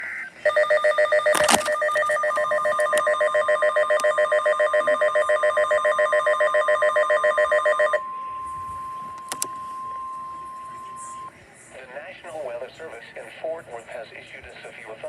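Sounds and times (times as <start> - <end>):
steady single tone: 8.0 - 11.3.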